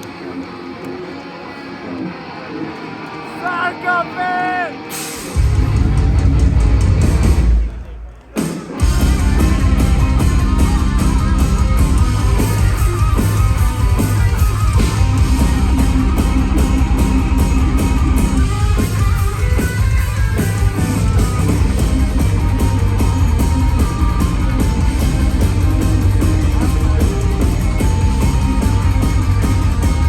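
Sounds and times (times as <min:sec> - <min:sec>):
distorted electric guitars: 0:00.0 - 0:30.0
fast dense drumming: 0:08.7 - 0:30.0.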